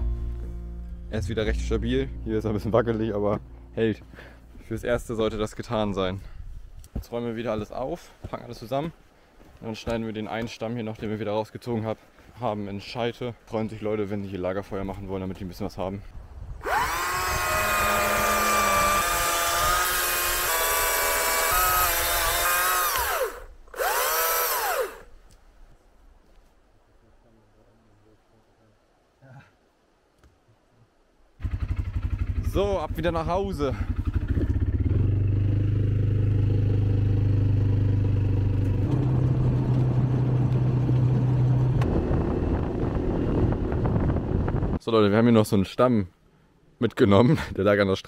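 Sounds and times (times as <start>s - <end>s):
electric chainsaw cutting log: 16.6s - 25.1s
vehicle engine running: 33.7s - 44.7s.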